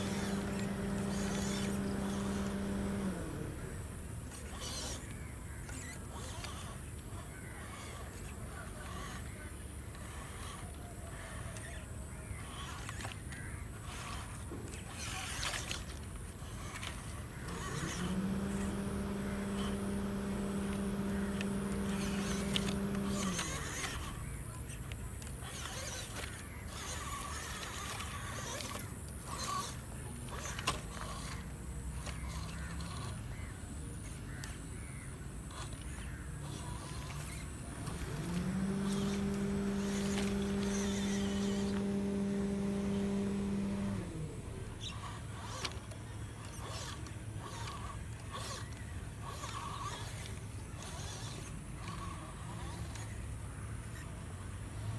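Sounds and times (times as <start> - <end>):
small clicks: 0.0 - 7.1, 12.8 - 24.2, 35.5 - 53.2
electric motor and gearbox whining: 0.0 - 54.9.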